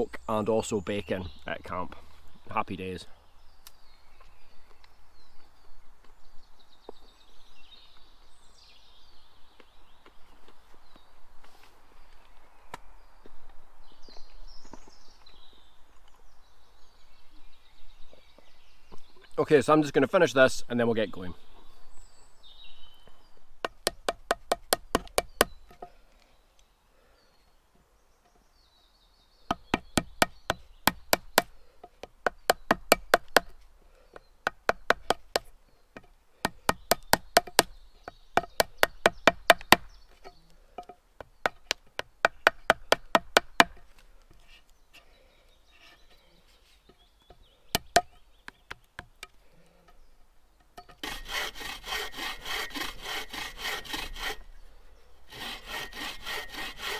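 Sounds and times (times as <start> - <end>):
rapid sharp knocks: 23.6 - 25.5, 29.5 - 31.5, 32.2 - 33.5, 36.4 - 37.7, 38.4 - 39.9.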